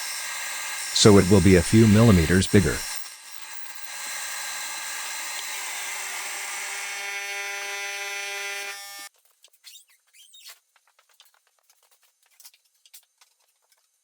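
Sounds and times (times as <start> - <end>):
power tool motor whining: 6.1 - 9.1.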